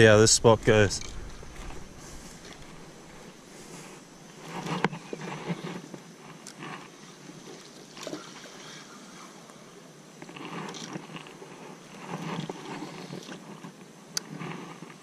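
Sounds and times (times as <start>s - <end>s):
water splashing and sloshing: 6.6s - 13.5s.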